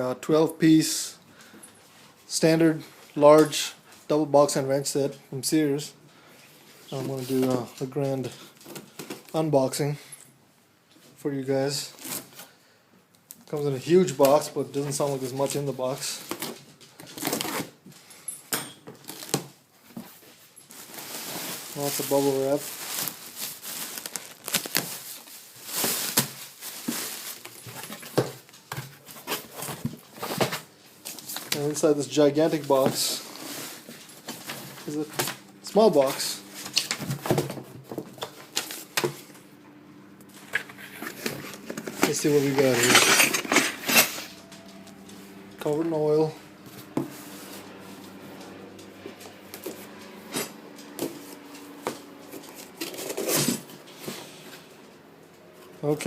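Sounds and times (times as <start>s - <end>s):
packaging rustles and clicks: 18.8s - 39.4s
bubble wrap crinkling: 19.0s - 31.8s.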